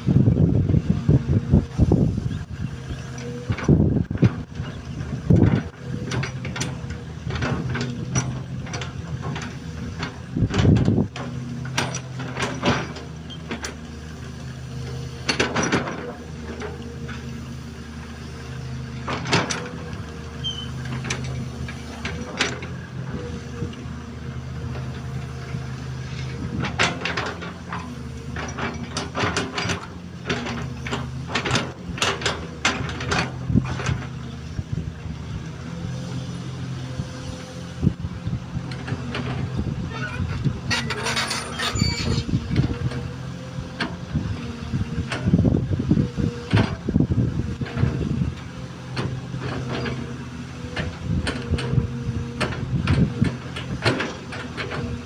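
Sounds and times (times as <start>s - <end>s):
excavator diesel engine running: 0.0s - 55.0s
machine clanks and knocks: 3.1s - 13.9s, 15.2s - 17.3s, 18.9s - 23.8s, 25.9s - 34.6s, 38.7s - 44.2s, 46.4s - 55.0s.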